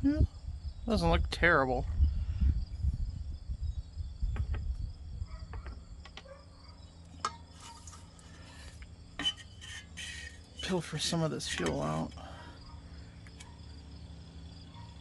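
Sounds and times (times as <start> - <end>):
low rumble: 0.0 - 5.3
crickets chirping: 0.0 - 15.0.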